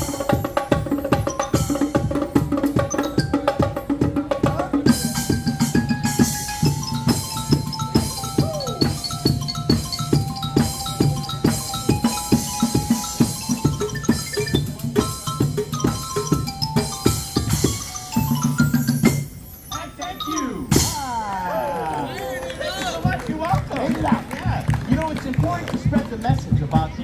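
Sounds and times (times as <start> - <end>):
drum strokes: 0.0 - 21.4
bright pitched percussion notes: 0.0 - 26.0.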